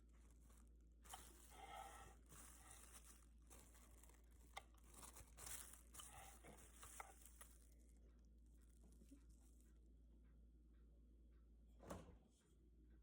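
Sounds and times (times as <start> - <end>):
faint rustling and crinkling: 0.0 - 10.3.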